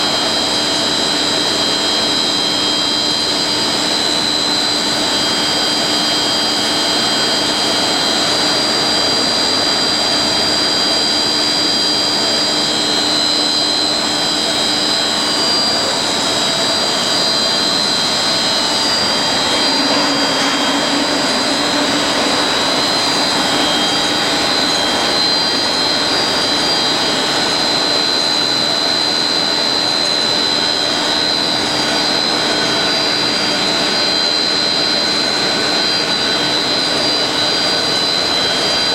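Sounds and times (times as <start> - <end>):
high-pitched machine whines: 0.0 - 38.9
extrusion machine rushing hiss: 4.7 - 28.4.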